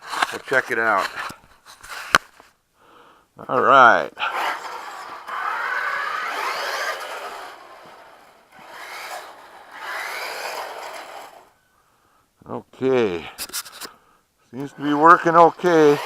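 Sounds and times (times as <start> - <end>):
electric rc car motor rasping: 4.2 - 11.6, 14.7 - 16.0.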